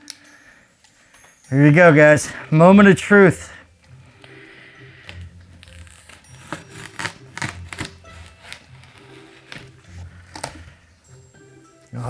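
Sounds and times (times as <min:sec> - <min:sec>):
quiet background music: 0:00.0 - 0:12.0
packaging crackling: 0:02.5 - 0:11.2.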